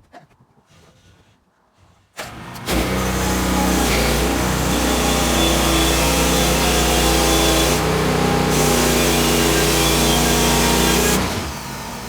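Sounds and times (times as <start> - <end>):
engine cranking and running: 2.2 - 12.0.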